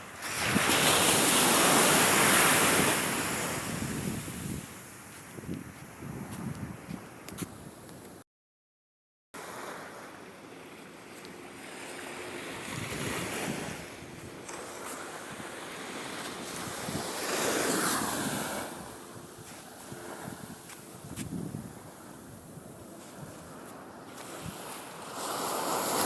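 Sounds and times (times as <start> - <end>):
ocean surf washing ashore: 0.0 - 7.2, 9.4 - 26.0
wind on microphone: 0.3 - 8.2, 12.6 - 15.6, 16.3 - 26.0.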